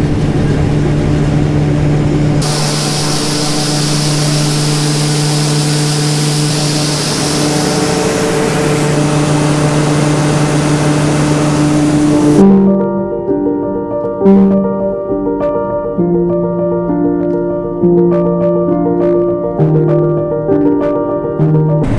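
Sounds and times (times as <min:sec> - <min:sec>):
combine harvester engine drone: 0:00.0 - 0:12.4
piano music: 0:02.2 - 0:21.9
strong hiss: 0:02.4 - 0:12.4.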